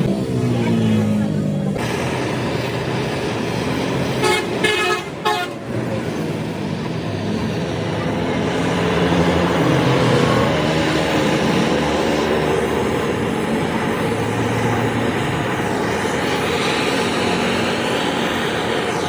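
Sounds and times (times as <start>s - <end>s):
road traffic rumble: 0.0s - 19.0s
vehicle horn toots: 4.2s - 5.6s.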